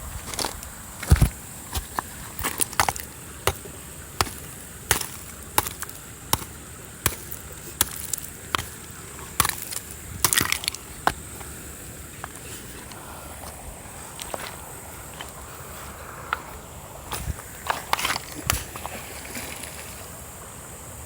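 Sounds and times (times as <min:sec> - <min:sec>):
footsteps walking: 0:12.2 - 0:19.0.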